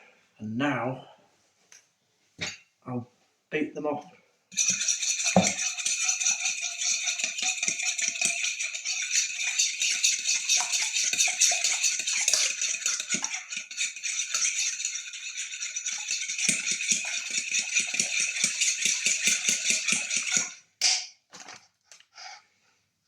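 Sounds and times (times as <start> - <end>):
eggs being beaten in bowl: 4.5 - 20.6.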